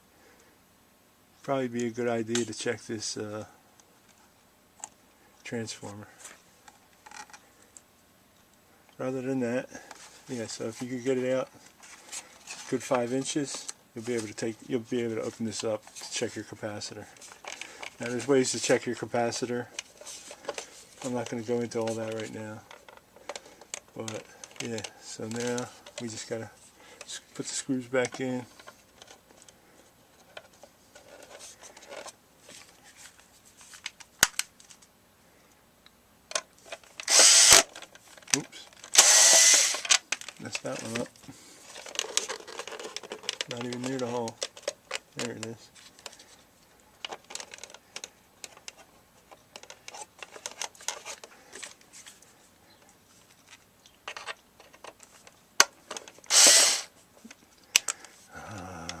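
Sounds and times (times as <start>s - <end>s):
metal parts scraping and rattling: 36.6s - 46.4s
screwdriver scraping sheet metal: 37.0s - 37.7s, 39.0s - 39.9s, 56.3s - 56.9s.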